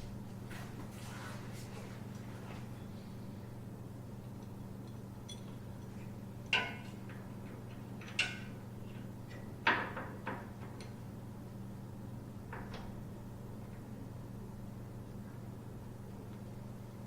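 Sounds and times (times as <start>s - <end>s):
steady low hum: 0.0s - 17.0s
metal clinks: 4.4s - 6.6s.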